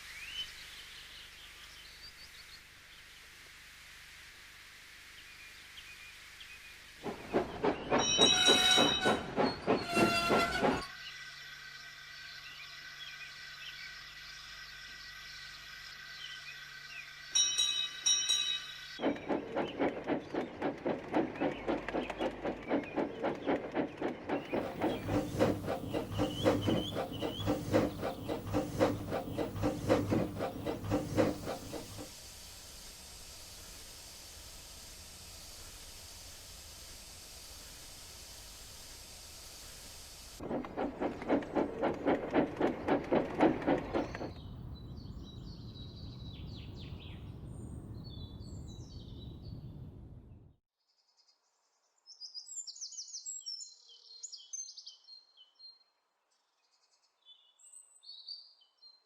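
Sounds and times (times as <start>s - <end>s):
steam locomotive chuffing: 7.0s - 10.9s, 18.8s - 44.7s
faint hiss: 32.1s - 40.4s.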